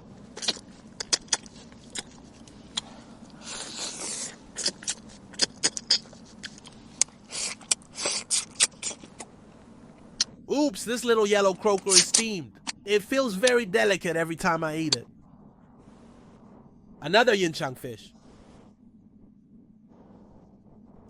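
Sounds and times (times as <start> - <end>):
person chewing with wet mouth clicks: 0.4 - 2.9, 3.6 - 9.3.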